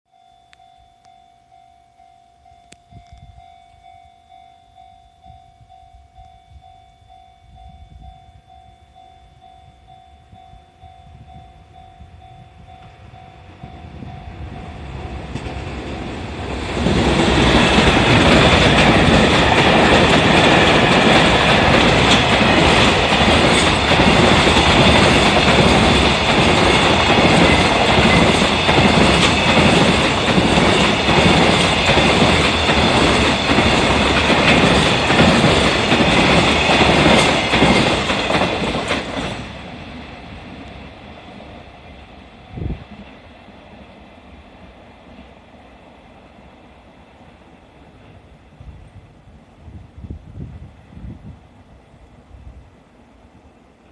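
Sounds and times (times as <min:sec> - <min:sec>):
level crossing alarm bell: 0:00.1 - 0:15.4
freight train rumble: 0:02.5 - 0:53.9
wheels clacking over rail joints: 0:14.4 - 0:41.8.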